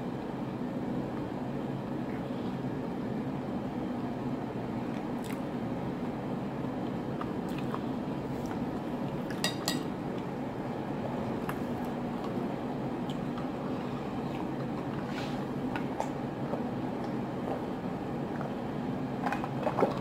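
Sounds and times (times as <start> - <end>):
steady low hum: 0.0 - 20.0
utensils clinking against dishes: 9.4 - 9.9.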